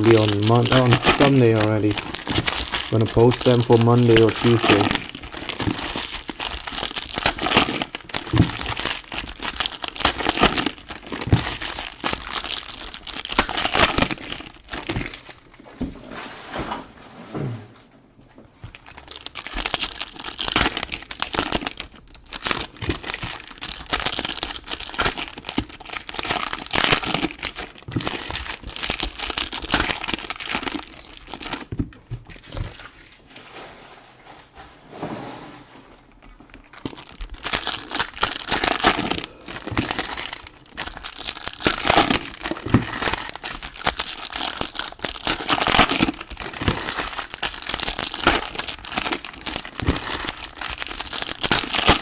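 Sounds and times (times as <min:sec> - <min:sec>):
cards shuffling: 0:00.0 - 0:06.5
card pack wrappers crinkling: 0:00.0 - 0:15.6, 0:18.6 - 0:33.0, 0:36.1 - 0:52.0.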